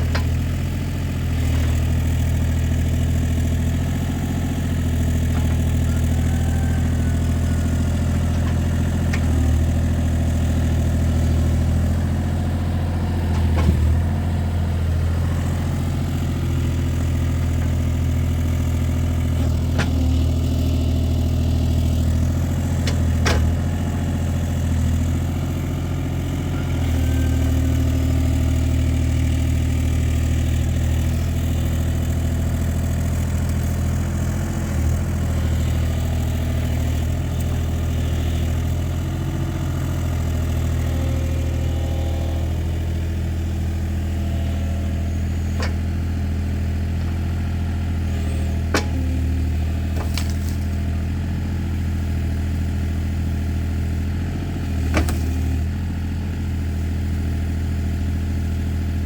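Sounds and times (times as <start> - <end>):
engine idling: 0.0 - 59.0.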